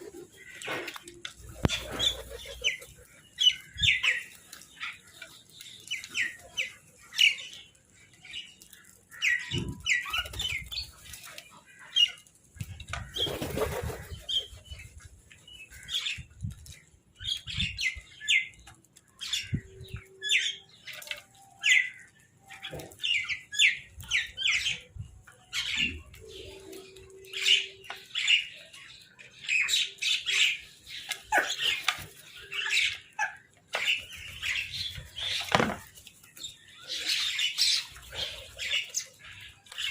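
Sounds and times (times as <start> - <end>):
flapping wings: 13.1 - 14.5.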